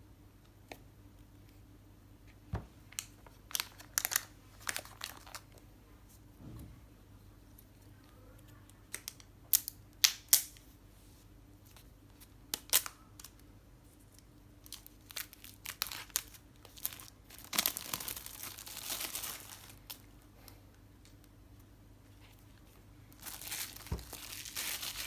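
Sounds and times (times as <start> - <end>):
packaging crinkling: 2.9 - 5.6, 14.7 - 20.0, 23.2 - 25.0
packaging tearing: 3.5 - 5.4, 15.1 - 19.9, 23.2 - 25.0.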